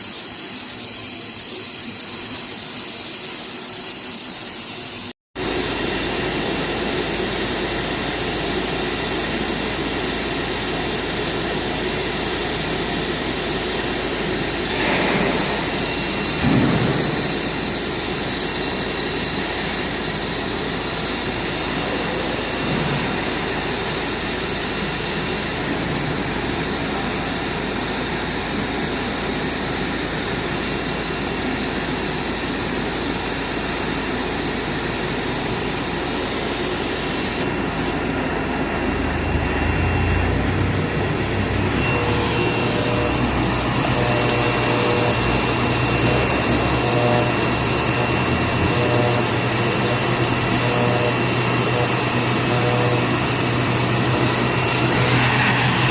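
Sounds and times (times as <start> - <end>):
thin high whine: 5.4 - 55.9
router machine whirring: 41.1 - 55.9.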